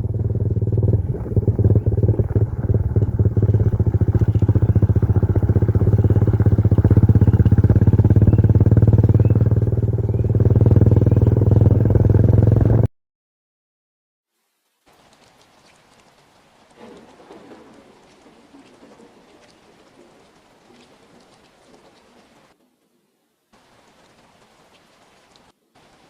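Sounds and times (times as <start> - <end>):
engine running: 0.0 - 12.9.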